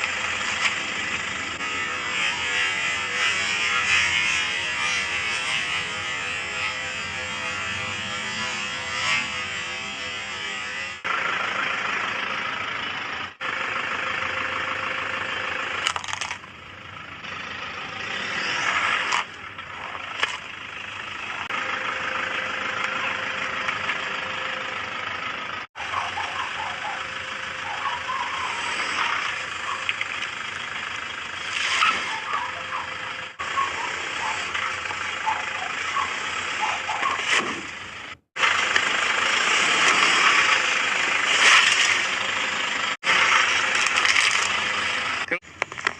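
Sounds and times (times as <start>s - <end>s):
tire crushing objects: 0.0s - 7.4s, 15.7s - 16.8s, 18.2s - 21.5s, 28.6s - 45.9s
car engine running: 0.0s - 45.9s.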